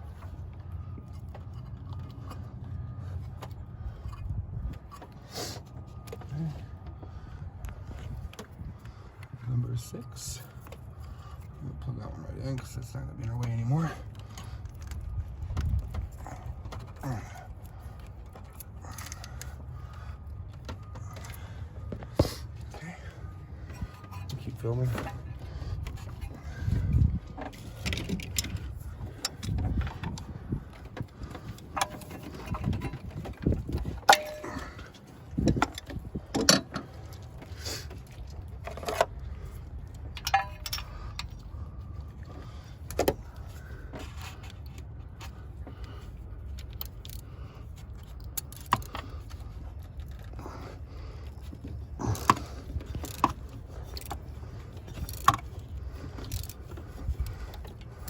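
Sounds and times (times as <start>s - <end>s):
steady low rumble: 0.0s - 58.0s
metal tools clinking: 31.4s - 37.3s, 38.3s - 41.5s.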